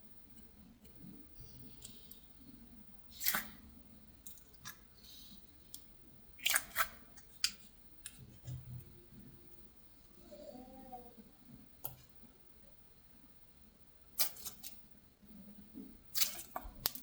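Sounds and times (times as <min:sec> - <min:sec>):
slime squished by hand: 0:03.1 - 0:05.8, 0:06.4 - 0:08.2.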